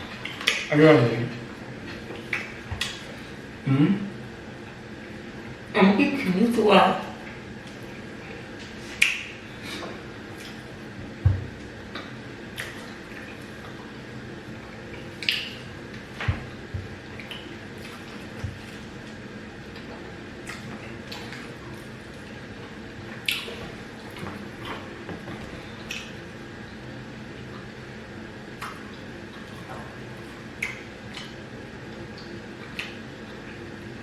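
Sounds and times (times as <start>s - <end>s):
wet eating squelches: 7.1s - 34.0s
chewing clicks: 23.2s - 23.6s, 30.6s - 31.4s.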